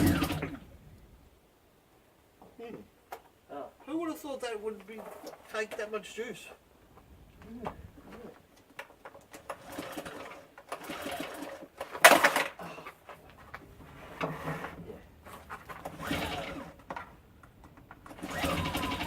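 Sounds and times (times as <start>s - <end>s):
generator recoil starter clatter: 0.0s - 0.6s, 8.8s - 13.2s, 15.3s - 19.0s.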